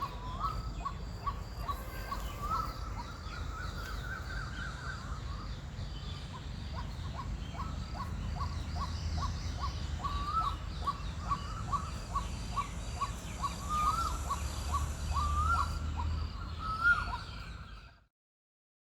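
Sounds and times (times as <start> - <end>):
waterhen calling: 0.0 - 4.7
low background rumble: 0.0 - 17.8
birds calling faintly: 0.0 - 18.1.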